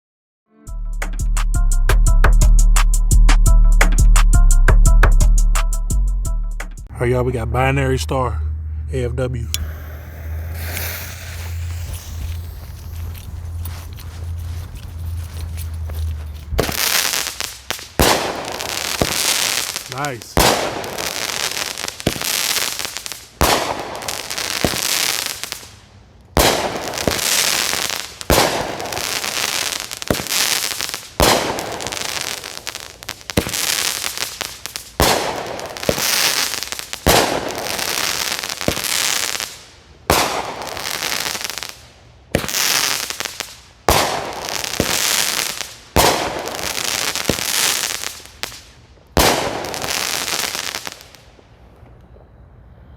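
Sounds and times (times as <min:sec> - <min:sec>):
firework crackling hiss: 0:09.5 - 0:51.3
firework bangs: 0:09.5 - 0:51.4.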